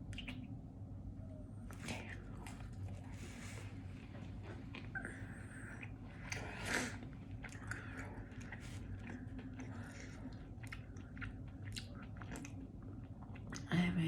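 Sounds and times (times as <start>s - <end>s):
person chewing crunchy food: 4.3s - 13.6s.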